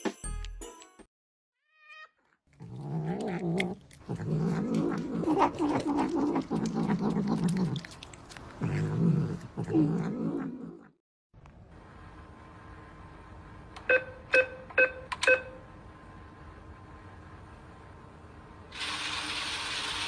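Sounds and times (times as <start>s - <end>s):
cat yowling: 3.2s - 8.0s.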